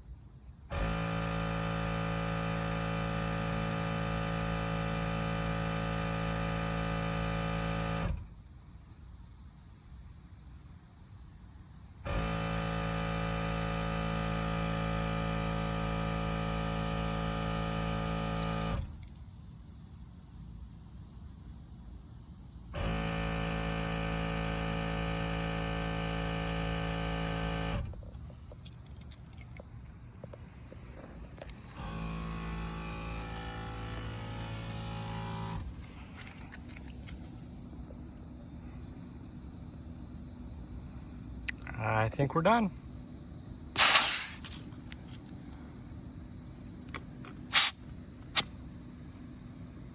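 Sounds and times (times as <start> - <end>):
air compressor humming: 30.2 - 36.6, 43.8 - 44.7, 47.5 - 48.5
compressed air hissing: 43.8 - 44.6, 47.5 - 48.5.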